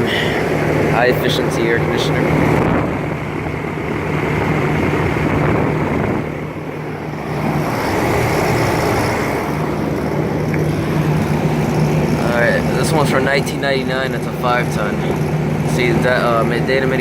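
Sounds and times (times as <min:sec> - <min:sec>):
fan air rushing: 0:00.0 - 0:17.0
low compressor hum: 0:00.0 - 0:17.0.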